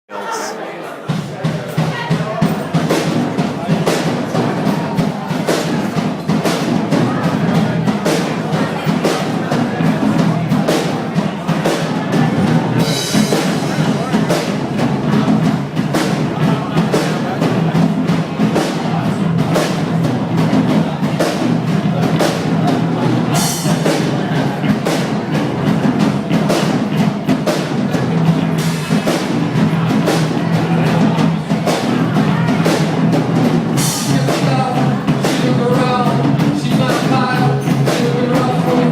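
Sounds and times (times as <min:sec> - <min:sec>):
drum kit steady beat: 0:00.4 - 0:38.9
sustained bass line: 0:12.0 - 0:38.9.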